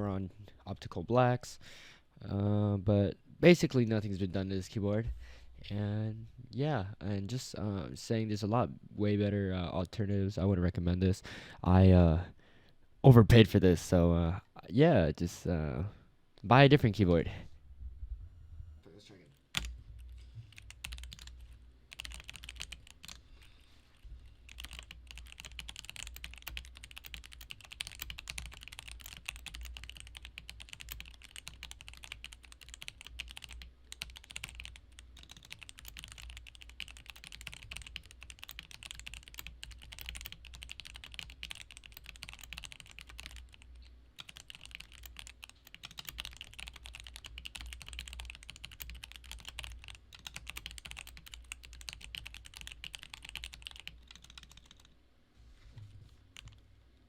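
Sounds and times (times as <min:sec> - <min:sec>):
mechanical keyboard typing: 0:19.6 - 0:19.8, 0:20.5 - 0:23.2, 0:24.5 - 0:54.9, 0:56.4 - 0:56.6.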